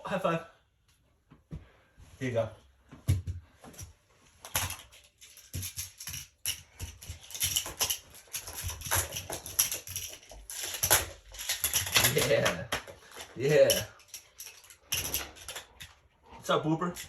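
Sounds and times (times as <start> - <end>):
plastic tiles clacking together: 4.4 - 16.0.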